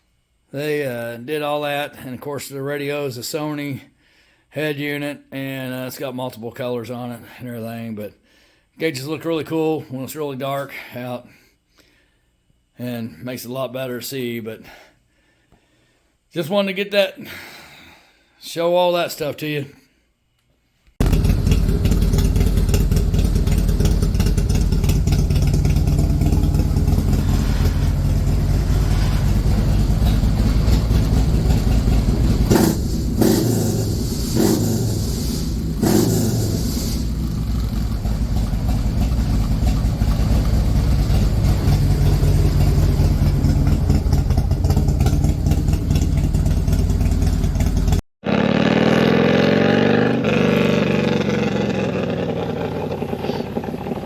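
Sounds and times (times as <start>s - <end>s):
motorcycle engine revving: 21.0s - 54.0s
motorcycle engine running: 21.0s - 54.0s.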